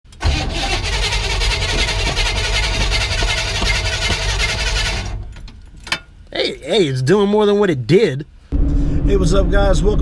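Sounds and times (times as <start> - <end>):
car engine churning: 0.1 - 6.0.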